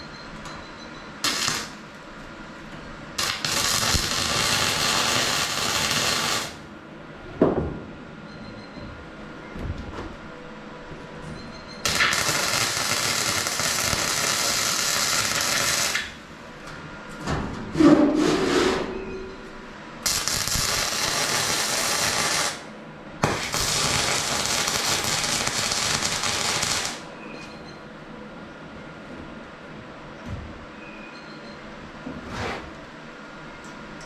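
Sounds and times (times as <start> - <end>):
welding arc crackling hiss: 1.2 - 1.8, 3.2 - 6.7, 11.8 - 16.2, 20.0 - 27.1.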